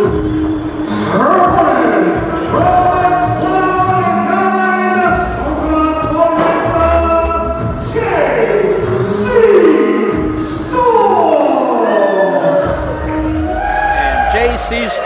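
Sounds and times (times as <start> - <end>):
entrance music with sung vocals: 0.0 - 15.0.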